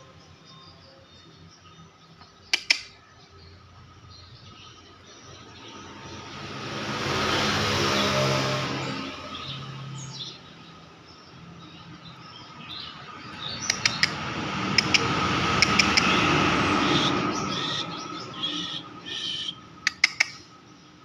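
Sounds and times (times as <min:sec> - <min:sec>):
small bird chirping: 0:00.3 - 0:05.9, 0:09.3 - 0:21.0
sharp clicks: 0:02.2 - 0:03.0, 0:13.6 - 0:14.2, 0:14.8 - 0:16.2, 0:19.9 - 0:20.4.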